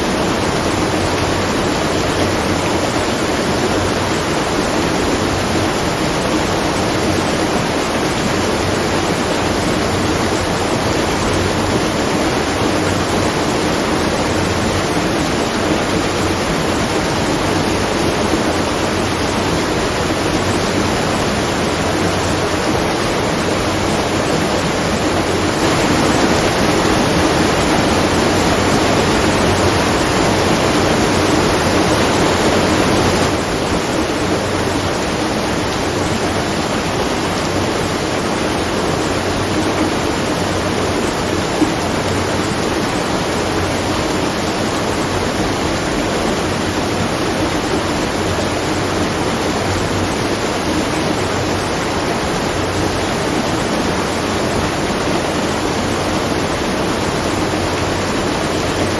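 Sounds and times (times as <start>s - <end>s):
water pouring at watermill: 0.0s - 58.9s.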